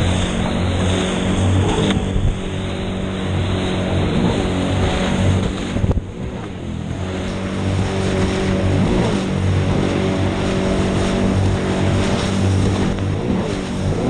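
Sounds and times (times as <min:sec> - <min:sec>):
jet ski engine running: 0:00.0 - 0:14.0.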